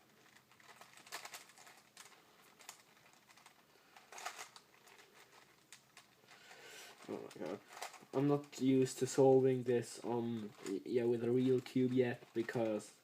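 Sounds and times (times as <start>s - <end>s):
plastic puzzle cube clicking: 0.2s - 6.2s.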